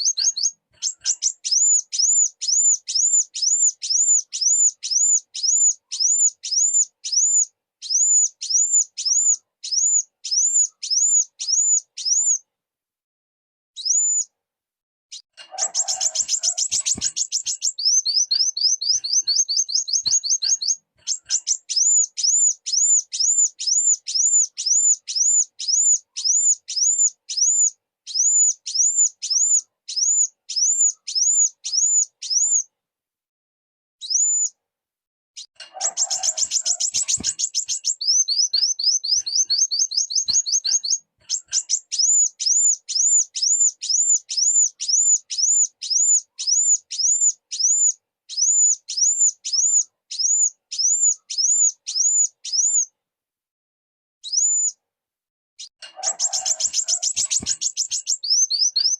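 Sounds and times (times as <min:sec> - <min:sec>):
sunbird singing: 0:00.0 - 0:12.4, 0:13.8 - 0:14.3, 0:15.1 - 0:32.7, 0:35.4 - 0:52.9, 0:55.6 - 0:58.9.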